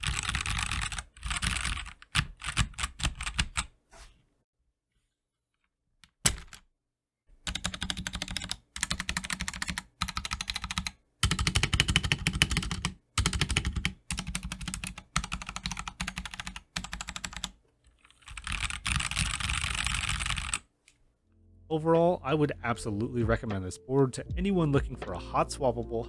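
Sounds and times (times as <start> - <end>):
mechanical keyboard typing: 0.0 - 3.7, 7.5 - 20.6.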